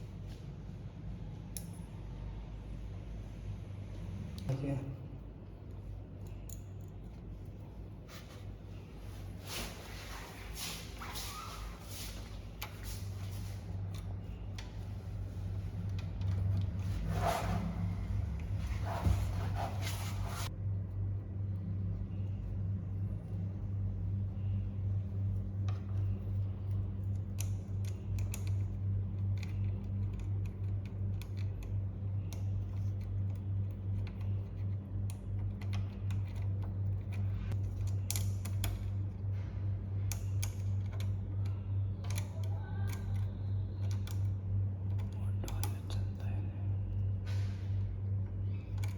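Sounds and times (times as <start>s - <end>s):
steady low hum: 0.0s - 48.9s
lock parts clicking and tapping: 27.1s - 39.0s, 40.1s - 44.3s.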